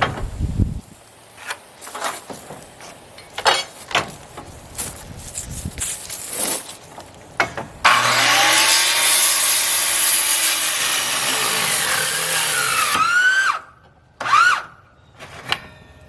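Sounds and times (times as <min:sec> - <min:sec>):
power saw cutting wood: 0:07.8 - 0:13.6, 0:14.2 - 0:14.7.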